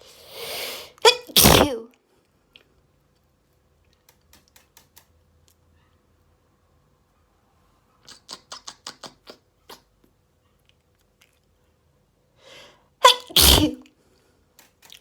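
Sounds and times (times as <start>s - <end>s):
breath drawn in: 0.0s - 1.7s
short sharp nose sniffs: 0.0s - 1.8s, 13.4s - 13.8s.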